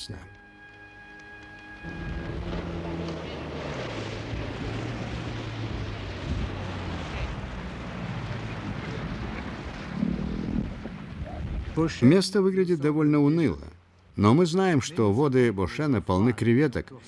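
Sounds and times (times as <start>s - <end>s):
low steady drone: 0.0s - 12.9s
wind buffeting microphone: 1.8s - 12.0s.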